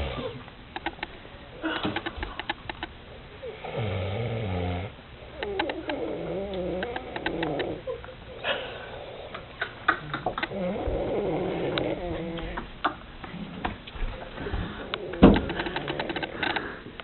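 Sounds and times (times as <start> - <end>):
man snoring: 3.6 - 4.9.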